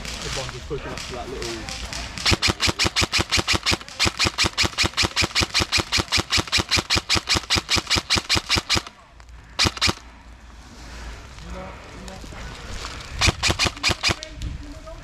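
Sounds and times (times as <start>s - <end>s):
airsoft gun firing: 0.0s - 9.0s, 9.6s - 10.0s, 13.2s - 14.4s.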